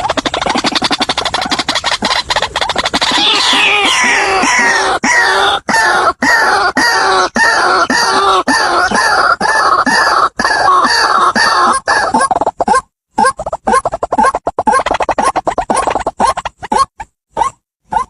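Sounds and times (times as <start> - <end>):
waterhen calling: 0.0 - 12.6.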